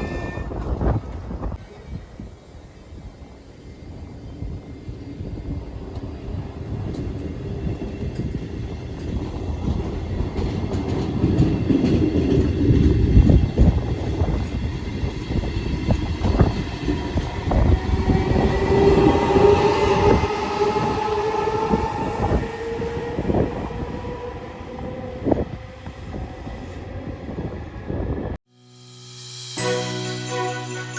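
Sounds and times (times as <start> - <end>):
train rumbling past: 0.0 - 30.9
rising whine: 15.3 - 28.4.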